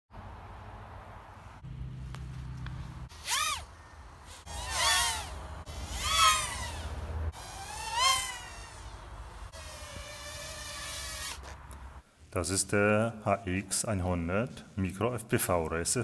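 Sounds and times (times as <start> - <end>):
quadcopter motors whining: 2.8 - 11.5.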